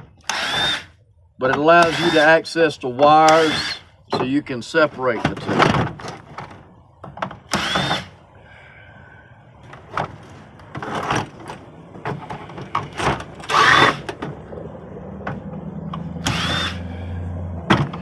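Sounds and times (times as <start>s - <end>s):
screws squeaking in plastic: 1.8s - 2.3s, 3.3s - 3.8s, 13.4s - 14.0s.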